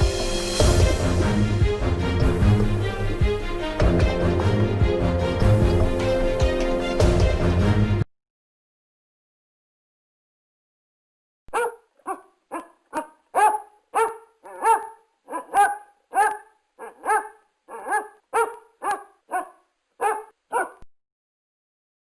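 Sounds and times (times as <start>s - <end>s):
dog barking: 11.5s - 20.9s.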